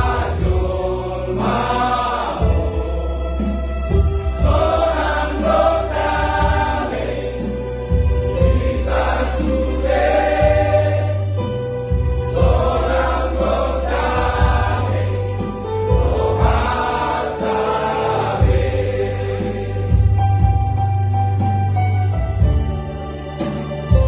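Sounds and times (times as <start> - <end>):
hymn sung over keyboard: 0.0 - 3.5, 8.4 - 11.4, 12.3 - 20.1.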